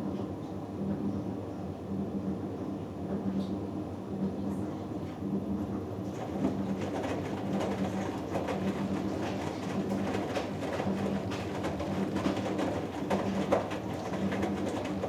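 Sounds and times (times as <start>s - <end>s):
washing machine drum motor hum: 5.7s - 15.0s
wet laundry sloshing in drum: 6.0s - 15.0s.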